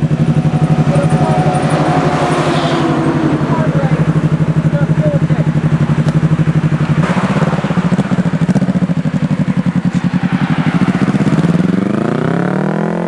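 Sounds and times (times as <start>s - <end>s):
motorcycle engine idling and revving: 0.0s - 13.0s.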